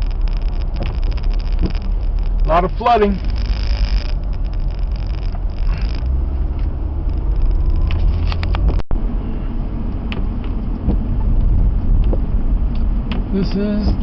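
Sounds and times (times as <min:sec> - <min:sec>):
sharp clicks: 0:00.0 - 0:08.9, 0:12.0 - 0:13.3
car engine and road noise: 0:00.0 - 0:14.0.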